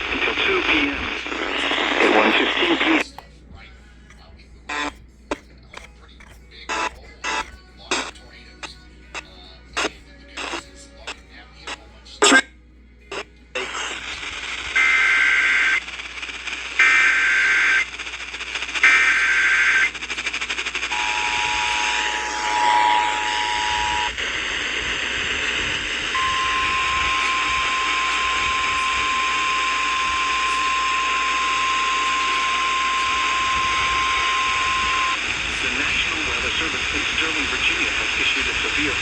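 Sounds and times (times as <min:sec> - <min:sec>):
radio hiss: 0:00.0 - 0:39.0
two-tone attention signal: 0:20.9 - 0:24.1, 0:26.1 - 0:35.2
warbling digital data bursts: 0:21.0 - 0:24.2.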